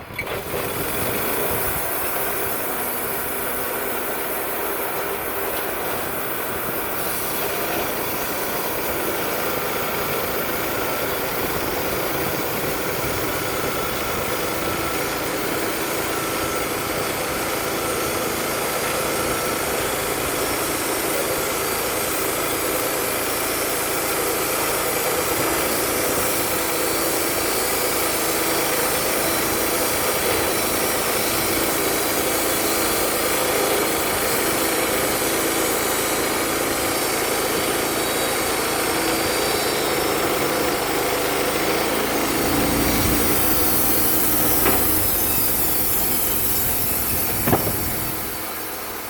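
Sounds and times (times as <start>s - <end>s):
band sawmill blade whining: 0.0s - 49.0s
sharp knock: 43.2s - 46.4s, 47.0s - 48.3s.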